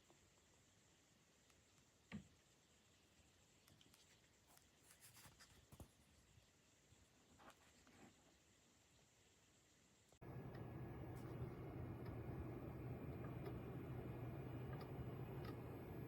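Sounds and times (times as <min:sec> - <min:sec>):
faint scratchy clicks and rustles: 0:03.5 - 0:06.4, 0:07.2 - 0:08.4, 0:10.2 - 0:16.0.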